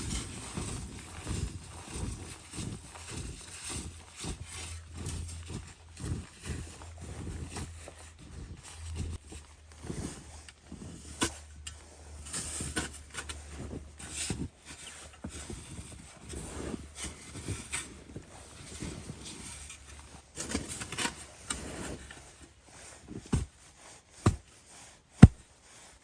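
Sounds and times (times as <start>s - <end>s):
footsteps crunching through snow: 0.0s - 14.6s.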